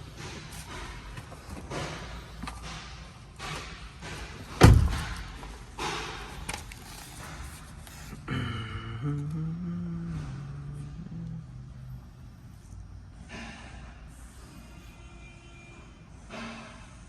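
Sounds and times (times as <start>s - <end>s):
handling and scraping noises: 0.0s - 8.3s
heavy slam: 4.5s - 6.0s.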